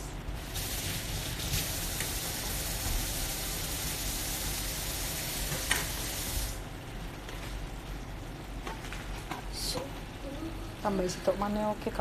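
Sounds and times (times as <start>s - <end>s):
food sizzling in a pan: 0.4s - 6.6s.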